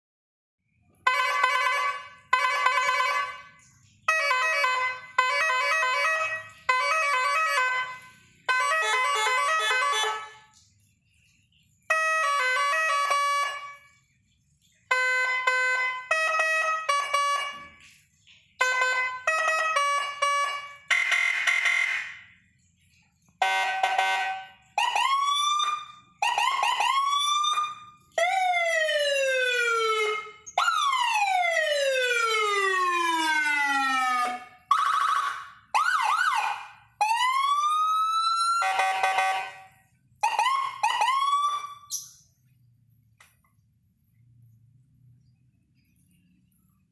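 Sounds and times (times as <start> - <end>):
multi-tone horn toots: 1.0 - 10.6, 11.9 - 13.8, 14.9 - 17.9, 18.6 - 22.3, 23.4 - 42.1
siren sweeping up and down: 1.1 - 10.5, 11.9 - 13.8, 14.9 - 17.8, 18.6 - 22.3, 23.4 - 42.2.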